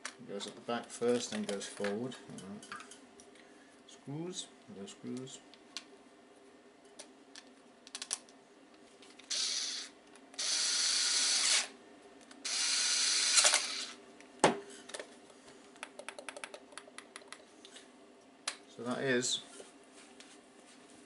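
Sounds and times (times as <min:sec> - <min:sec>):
power screwdriver motor: 0:09.3 - 0:11.7, 0:12.4 - 0:14.0.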